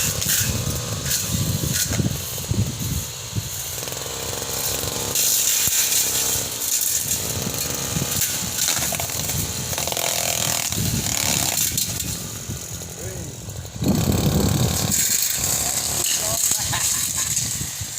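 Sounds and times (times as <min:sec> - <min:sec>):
brush cutter engine running: 0:00.0 - 0:17.9.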